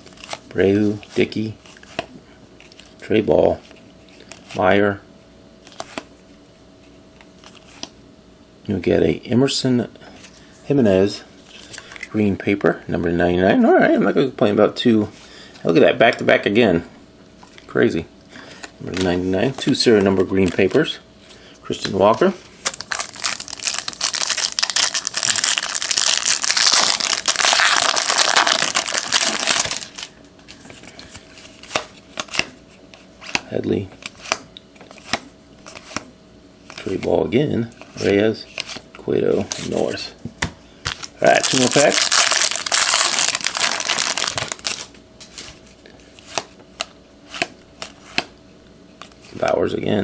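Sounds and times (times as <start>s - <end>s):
wrapper tearing and crinkling: 22.6s - 30.1s, 40.9s - 44.9s.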